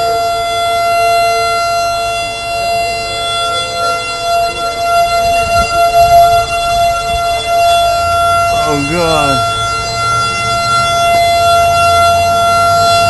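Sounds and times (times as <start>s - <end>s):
fainter second siren tone: 0.0s - 13.0s
siren steady tone: 0.0s - 13.0s.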